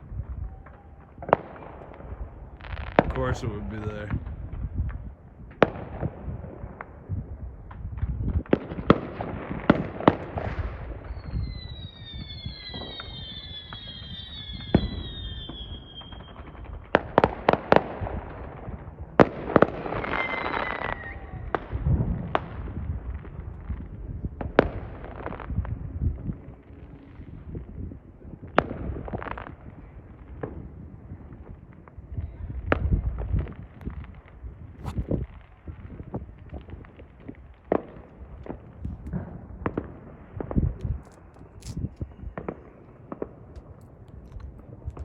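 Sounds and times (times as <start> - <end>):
fireworks bangs and cracks: 0.0 - 26.7, 28.4 - 45.0
long falling whistle: 11.1 - 16.4, 20.2 - 21.4.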